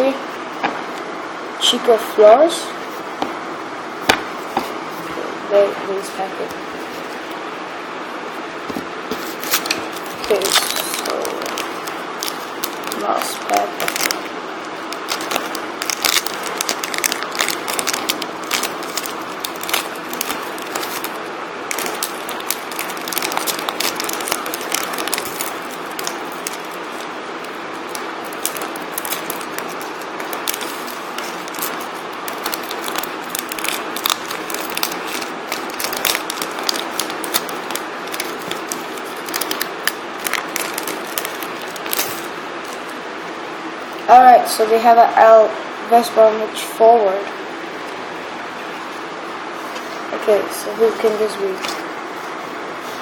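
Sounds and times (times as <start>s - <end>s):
cards shuffling: 9.1s - 14.3s, 14.9s - 42.9s
packaging crinkling and tearing: 9.2s - 43.0s.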